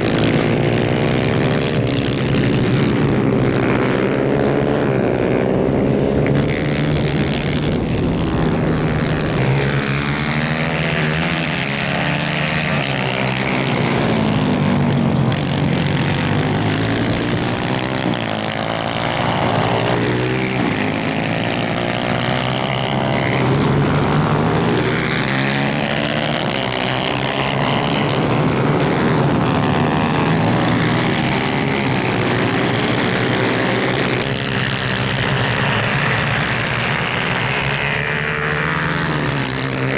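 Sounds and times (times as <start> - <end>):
kart engines racing: 0.0 - 39.9.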